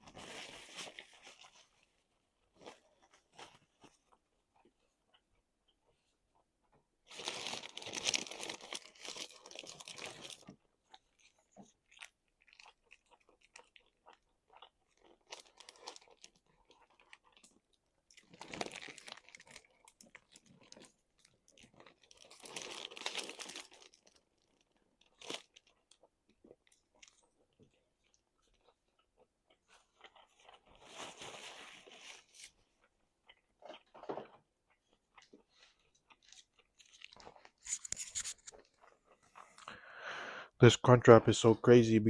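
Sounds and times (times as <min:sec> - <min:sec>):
wet chewing: 0:08.4 - 0:30.8.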